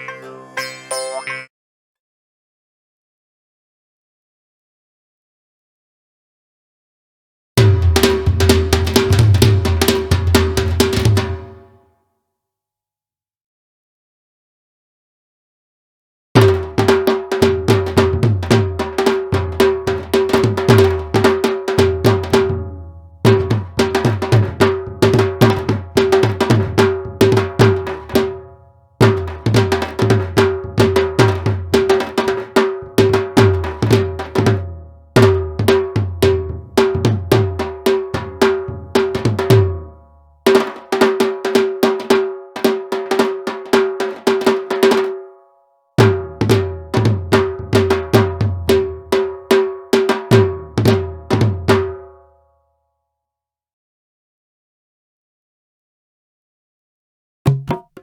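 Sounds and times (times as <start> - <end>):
tabla-like hand drums: 7.6 - 11.6, 16.4 - 45.2, 46.0 - 52.2, 57.5 - 58.0.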